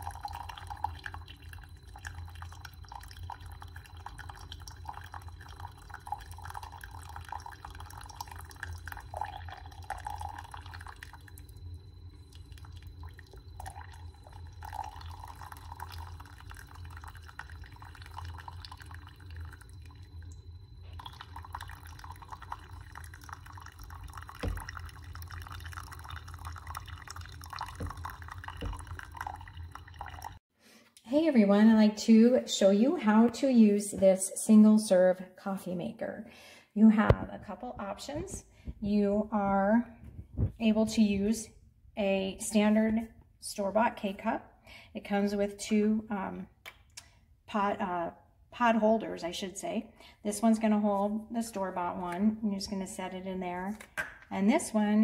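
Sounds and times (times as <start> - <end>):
coffee dripping into a cup: 0.0 - 30.4
coffee machine humming: 0.0 - 30.4.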